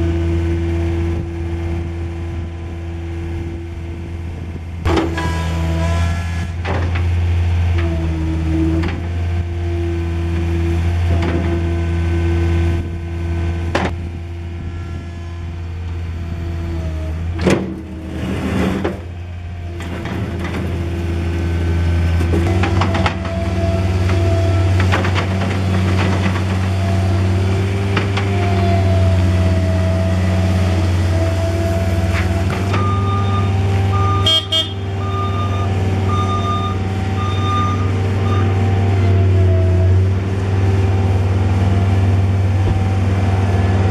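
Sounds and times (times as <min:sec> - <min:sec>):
diesel engine running: 0:00.0 - 0:43.9
backup alarm beeping: 0:32.8 - 0:38.6.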